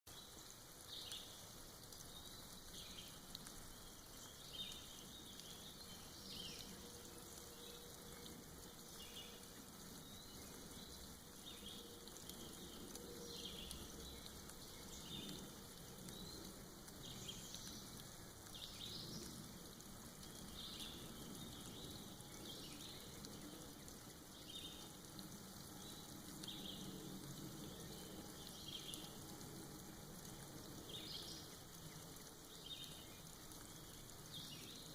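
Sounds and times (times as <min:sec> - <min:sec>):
soft rain dripping: 0:00.1 - 0:34.9.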